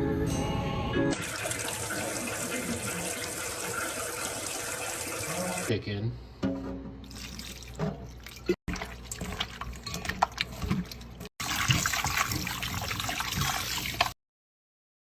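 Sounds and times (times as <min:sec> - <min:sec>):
water running from tap into sink: 0:01.2 - 0:05.7, 0:07.1 - 0:14.2
small splashes and clinks: 0:07.0 - 0:14.1.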